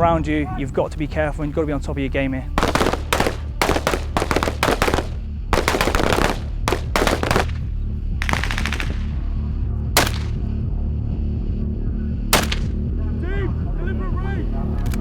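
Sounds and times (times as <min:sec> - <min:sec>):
background music with low tones: 0:00.0 - 0:15.0
automatic gunfire bursts: 0:02.6 - 0:09.1.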